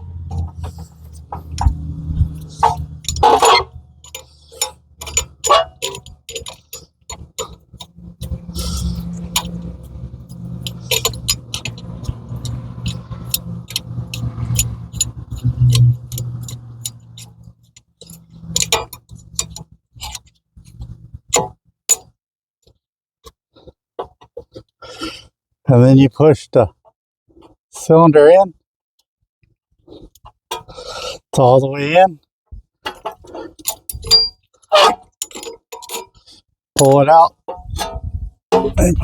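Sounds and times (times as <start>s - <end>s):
low hum: 0.0s - 17.5s
metal tool clicking and clinking: 0.4s - 20.2s, 20.8s - 22.0s, 32.9s - 36.1s, 36.8s - 37.0s, 38.6s - 38.8s.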